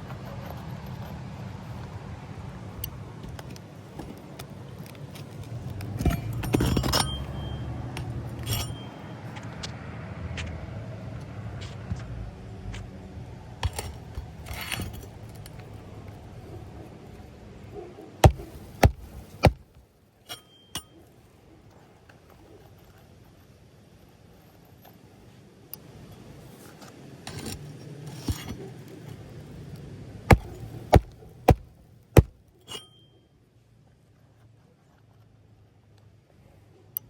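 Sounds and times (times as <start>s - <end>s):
metal tools clinking and scraping: 3.2s - 9.4s, 13.6s - 15.8s, 20.3s - 21.1s, 26.0s - 28.7s, 30.3s - 33.2s.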